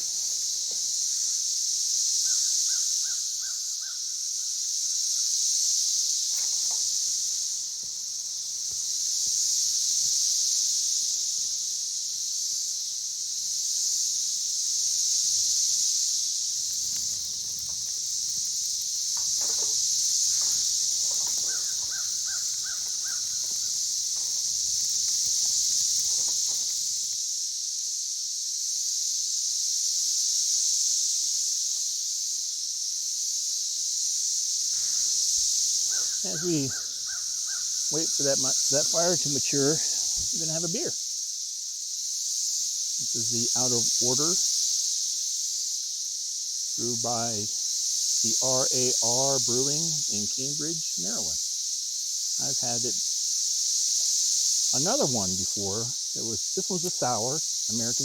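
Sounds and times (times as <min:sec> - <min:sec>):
high-pitched insect chorus: 0:00.0 - 0:58.0.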